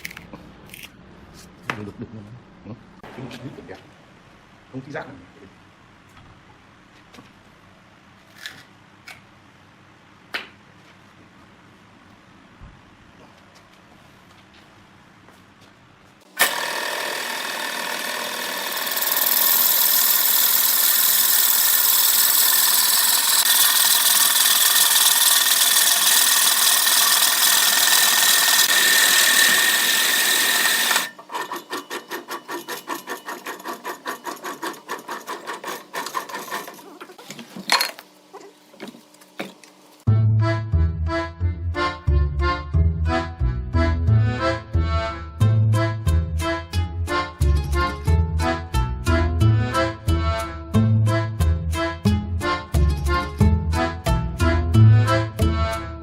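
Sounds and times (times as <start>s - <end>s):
wood lathe scraping hiss: 16.4s - 37.2s.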